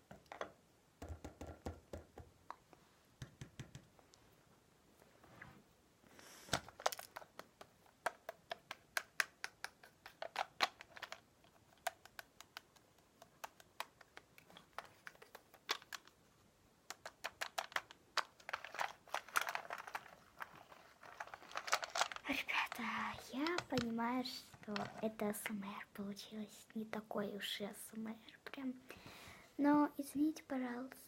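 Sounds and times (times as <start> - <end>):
crinkling: 6.4 - 9.0, 9.6 - 25.6.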